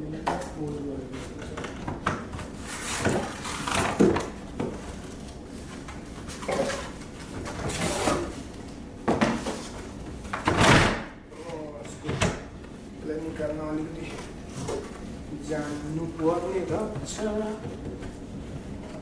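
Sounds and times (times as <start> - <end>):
cardboard packaging scraping: 2.4 - 4.2, 4.8 - 8.5.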